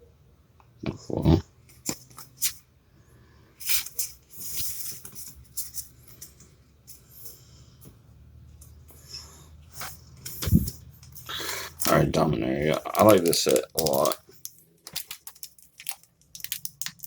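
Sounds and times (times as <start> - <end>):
foil wrapper crackling and tearing: 11.8 - 17.0.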